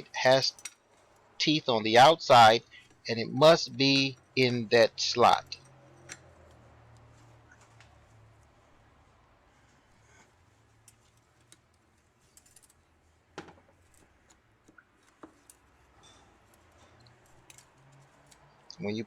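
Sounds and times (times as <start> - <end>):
metal parts clicking: 10.8 - 12.8, 15.0 - 18.5.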